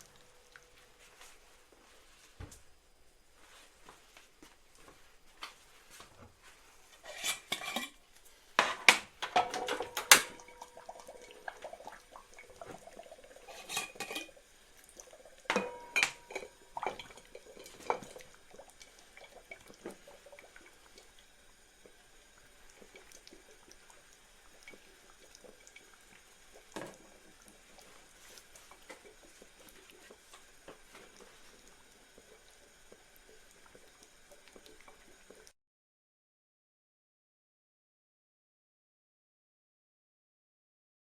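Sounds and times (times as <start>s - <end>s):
glass jars clinking and knocking: 8.6s - 10.7s, 13.5s - 14.4s, 15.5s - 17.1s.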